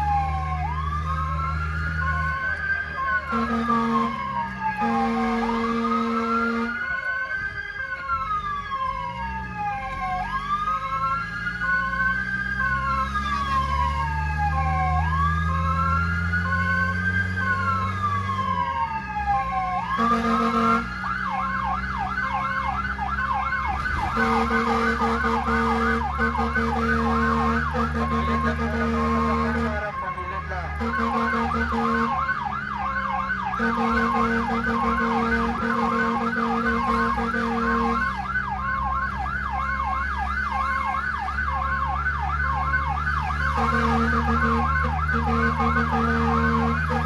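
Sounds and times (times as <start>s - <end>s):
electronic siren wailing and yelping: 0.0s - 47.0s
low horn-like tone: 3.0s - 7.0s, 19.8s - 21.8s, 23.9s - 32.4s, 33.5s - 38.3s, 43.5s - 47.0s.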